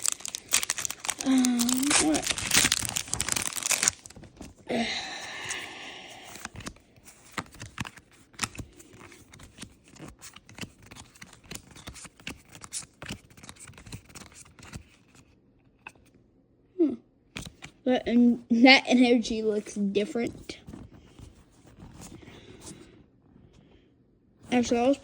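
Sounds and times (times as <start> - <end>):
cards clicking and snapping: 0.0 - 4.1, 6.3 - 14.8
foil wrapper crinkling and tearing: 0.0 - 4.7.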